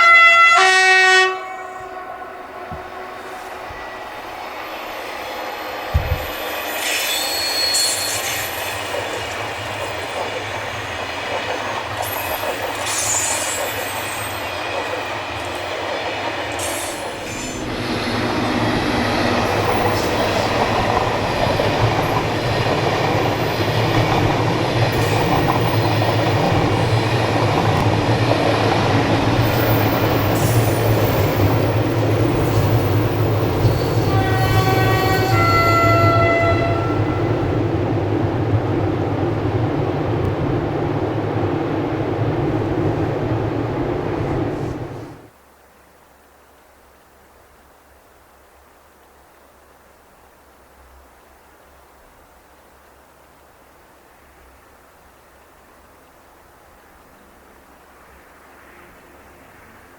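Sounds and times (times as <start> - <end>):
deep train rumble: 0.0 - 6.8, 8.0 - 45.3
shrill steady tone: 1.2 - 9.4, 29.5 - 37.6
train wheels squealing on rails: 3.0 - 27.8, 29.1 - 37.6.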